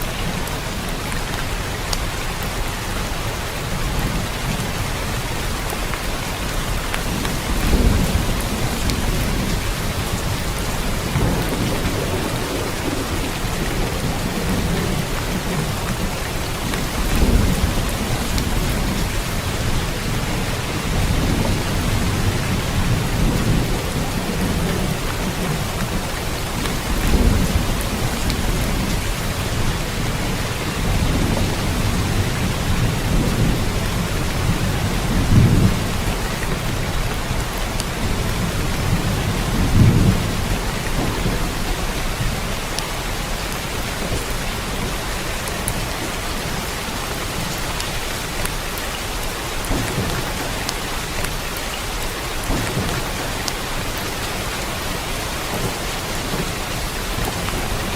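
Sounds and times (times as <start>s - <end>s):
dense rain falling: 0.0s - 57.9s.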